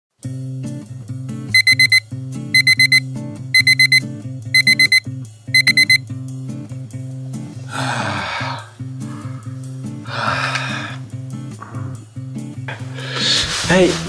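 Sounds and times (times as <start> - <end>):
background music low melody: 0.2 - 14.0
alarm clock beeping: 1.5 - 2.0, 2.6 - 5.0, 5.6 - 6.0.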